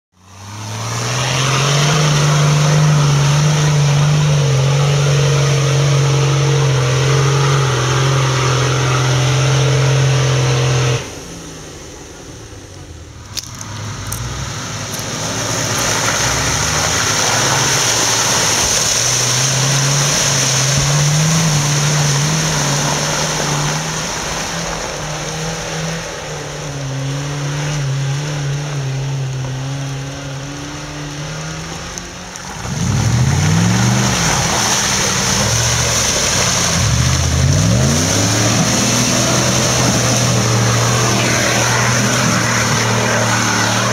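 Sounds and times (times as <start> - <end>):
off-road engine droning: 0.0 - 43.9.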